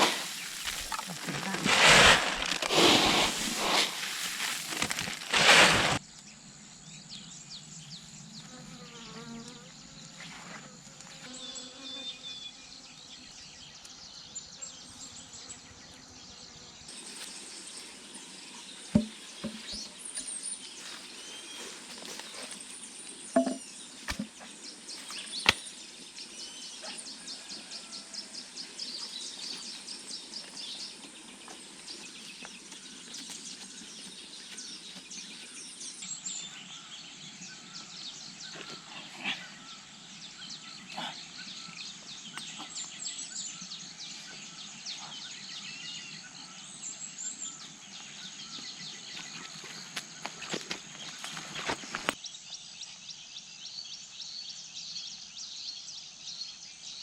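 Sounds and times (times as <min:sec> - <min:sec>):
small birds chirping: 0:00.0 - 0:10.2, 0:10.9 - 0:57.0
insects buzzing: 0:00.0 - 0:52.2
sharp knocks: 0:19.0 - 0:19.9, 0:23.4 - 0:24.4.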